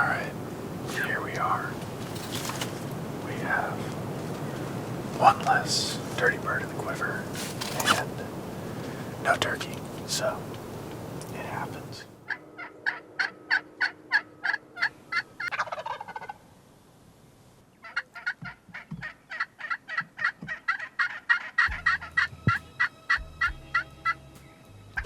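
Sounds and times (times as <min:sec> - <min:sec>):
turkey yelping: 0:12.3 - 0:16.4, 0:17.8 - 0:24.2.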